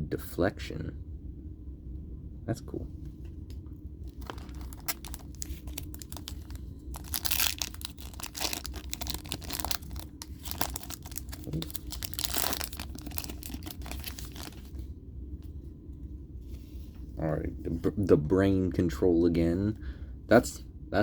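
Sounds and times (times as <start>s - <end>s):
foil wrapper tearing and crinkling: 4.1s - 14.8s.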